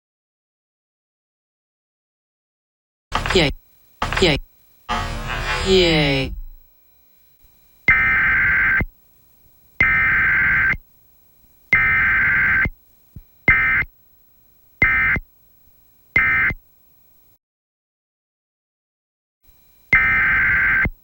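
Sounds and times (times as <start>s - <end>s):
two-tone digital data bursts: 3.2s - 6.6s, 7.9s - 8.9s, 9.8s - 10.8s, 11.8s - 12.7s, 13.5s - 13.9s, 14.8s - 15.2s, 16.2s - 16.6s, 19.9s - 21.0s.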